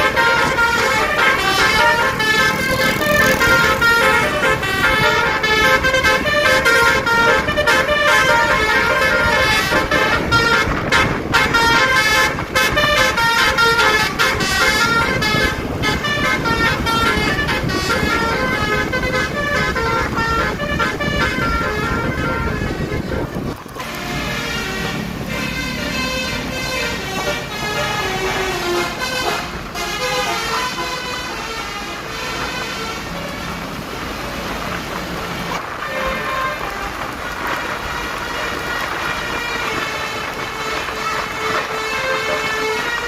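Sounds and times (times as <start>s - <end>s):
bus musical horn playing tune: 0.0s - 43.0s
passing traffic: 0.0s - 43.0s.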